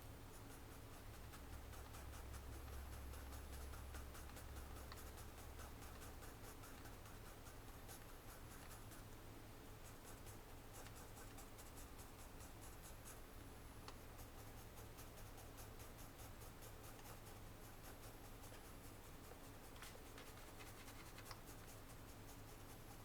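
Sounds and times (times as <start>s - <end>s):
pencil scratching on paper: 14.2s - 23.0s.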